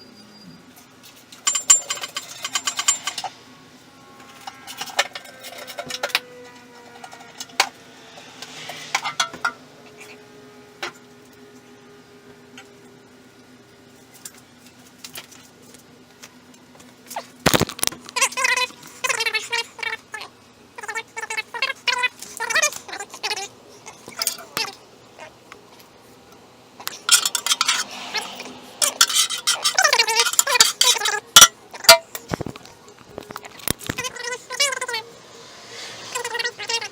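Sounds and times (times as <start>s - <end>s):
steady low hum: 0.0s - 36.9s
metal clinking and rattling: 1.0s - 3.4s, 4.2s - 7.7s, 26.9s - 32.5s.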